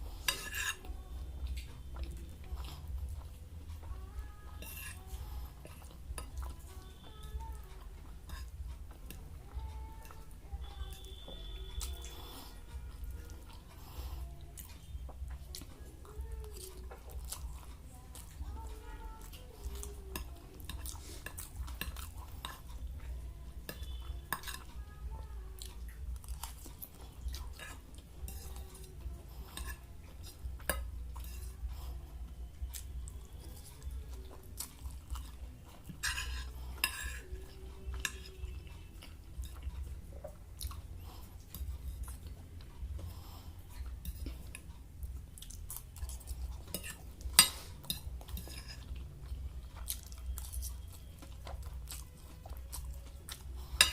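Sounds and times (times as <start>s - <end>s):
chewing and crunching: 0.0s - 53.9s
low steady hum: 0.0s - 53.9s
cutlery scraping on plate: 0.2s - 0.9s, 4.6s - 5.0s, 8.2s - 8.5s, 23.7s - 24.7s, 29.5s - 31.5s, 35.2s - 37.3s, 38.0s - 39.7s, 46.1s - 49.0s, 52.7s - 53.9s.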